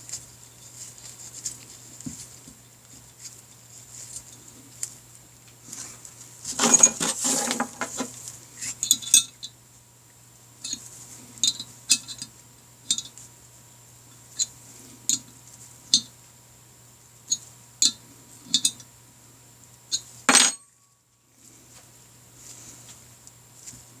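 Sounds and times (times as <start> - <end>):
metal tools clinking on workbench: 6.6 - 8.0, 20.3 - 20.7.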